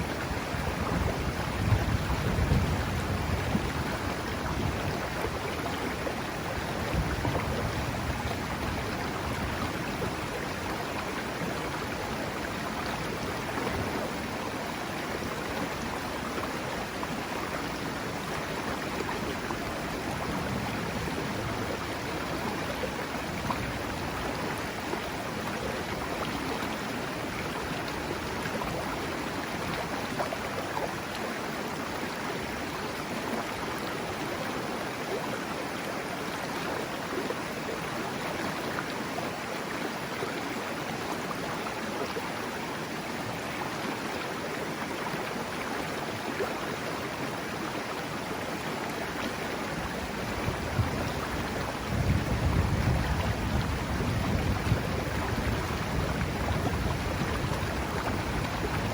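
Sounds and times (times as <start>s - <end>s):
river water rushing: 0.0s - 58.9s.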